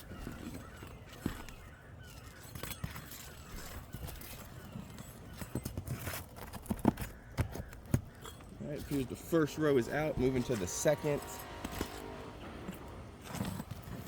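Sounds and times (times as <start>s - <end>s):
light scraping: 8.2s - 14.0s.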